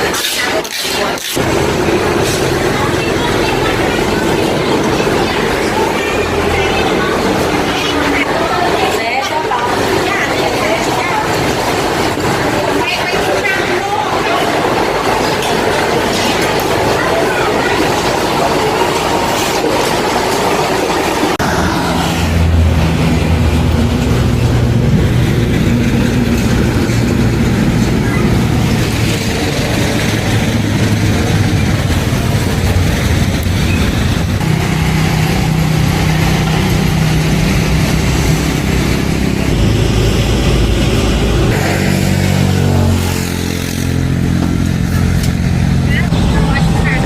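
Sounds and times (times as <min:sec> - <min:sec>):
road noise: 0:00.0 - 0:47.0
vehicle engine running: 0:01.0 - 0:47.0.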